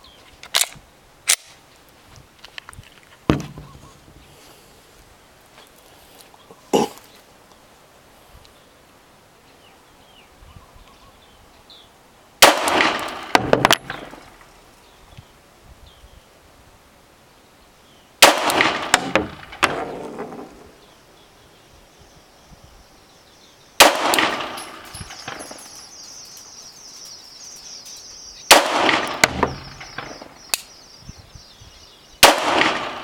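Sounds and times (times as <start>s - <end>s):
pistol shots echoing: 12.4s - 14.2s, 18.2s - 20.0s, 23.8s - 25.8s, 28.4s - 30.6s, 32.2s - 33.0s.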